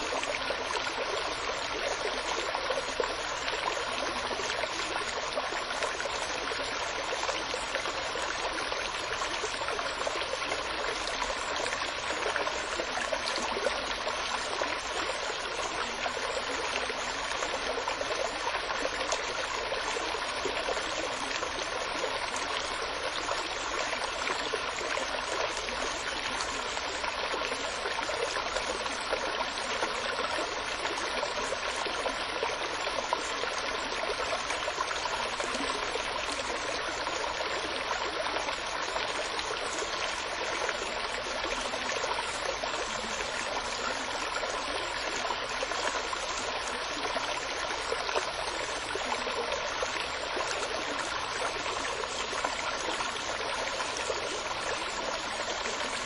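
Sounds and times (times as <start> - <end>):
stream babbling: 0.0 - 56.0.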